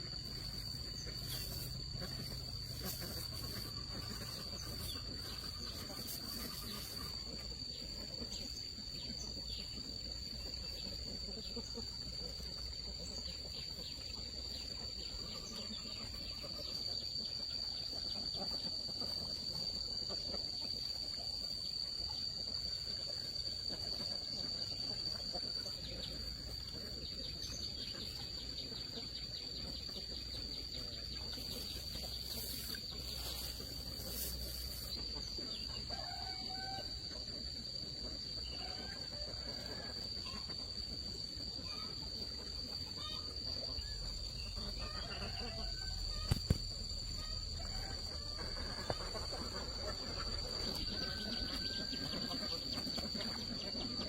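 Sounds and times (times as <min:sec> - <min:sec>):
high-pitched insect drone: 0:30.2 - 0:37.1.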